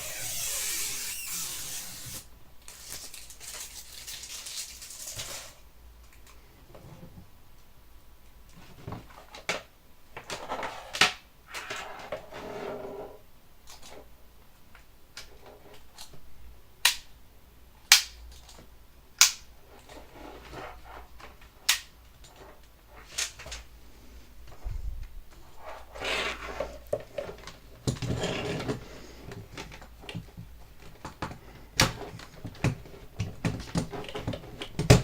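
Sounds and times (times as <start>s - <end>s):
packaging rustling: 0.0s - 5.6s.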